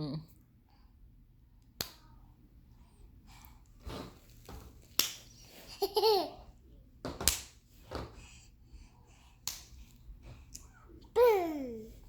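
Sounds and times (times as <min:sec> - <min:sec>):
baby laughing: 0:05.7 - 0:06.5.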